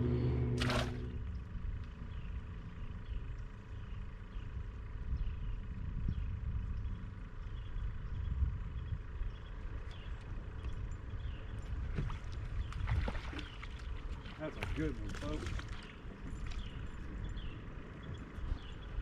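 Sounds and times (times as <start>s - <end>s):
faint steady whine: 0.0s - 9.7s
boat motor humming: 0.0s - 19.0s
low uneven rumble: 0.0s - 19.0s.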